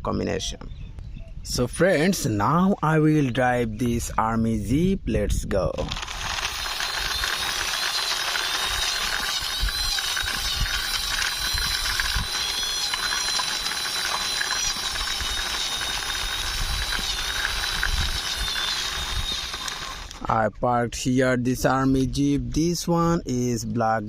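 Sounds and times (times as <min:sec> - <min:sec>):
toy jeep wheels whirring: 0:05.9 - 0:20.3.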